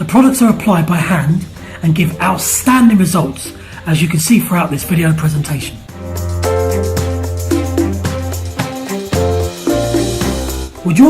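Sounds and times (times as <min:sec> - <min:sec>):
background music with bass and chords: 0:00.0 - 0:11.0
light ticking beat: 0:05.8 - 0:11.0.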